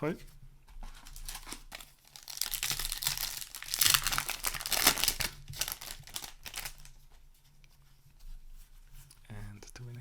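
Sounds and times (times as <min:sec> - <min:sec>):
foil wrapper crinkling: 0:01.0 - 0:07.0.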